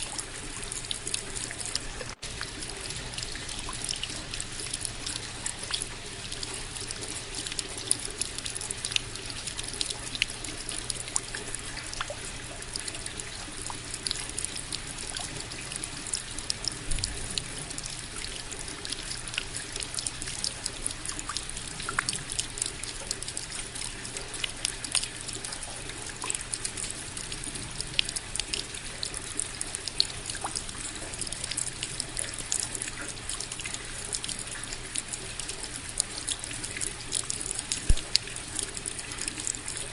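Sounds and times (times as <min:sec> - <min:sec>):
steady rain hiss: 0:00.0 - 0:25.4
drops and drips ticking: 0:00.0 - 0:39.9.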